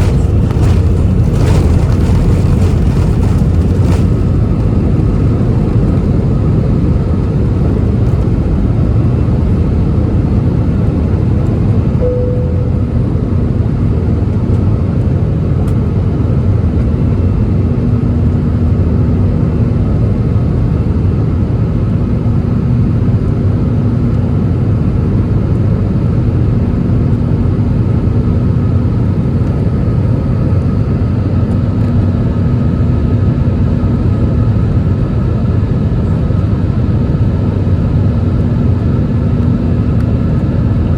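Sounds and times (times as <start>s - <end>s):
jet engine rumble: 0.0s - 40.9s
faint steady tones: 12.0s - 13.0s.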